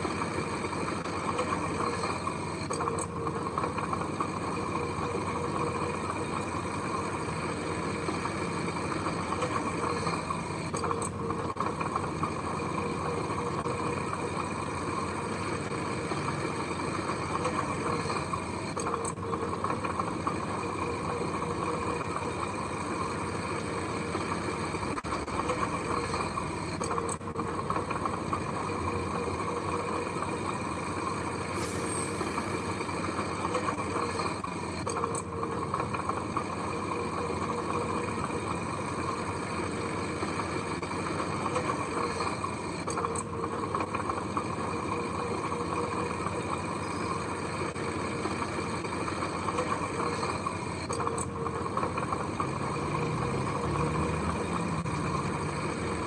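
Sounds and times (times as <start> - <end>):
heavy machinery diesel engines: 0.0 - 56.0
air hiss: 31.5 - 32.9.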